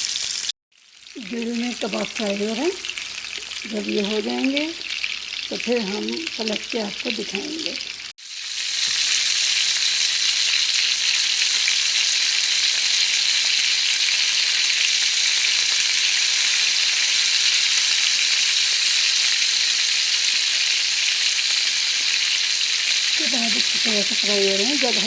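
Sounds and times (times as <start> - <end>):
kababs sizzling in oil: 0.0 - 25.0.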